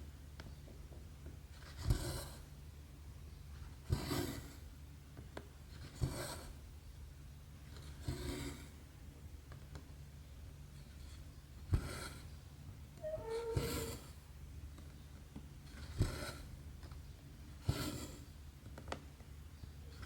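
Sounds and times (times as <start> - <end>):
low steady hum: 6.4 - 15.8.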